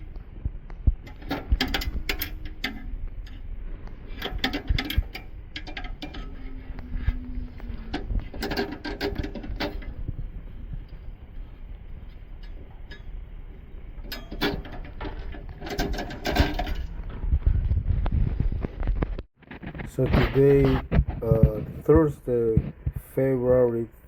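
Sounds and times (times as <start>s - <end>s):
low hum: 0.0s - 24.0s
metal parts clicking and rattling: 1.0s - 17.2s.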